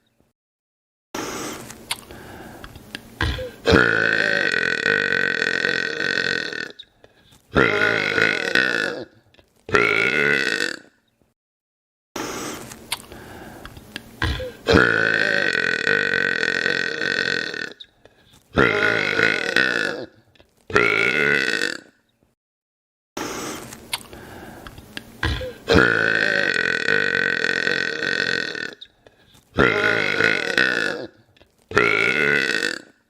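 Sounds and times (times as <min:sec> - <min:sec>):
man belching loudly: 0:03.2 - 0:06.8, 0:07.5 - 0:10.9, 0:14.2 - 0:17.8, 0:18.6 - 0:21.9, 0:25.2 - 0:28.8, 0:29.6 - 0:33.0.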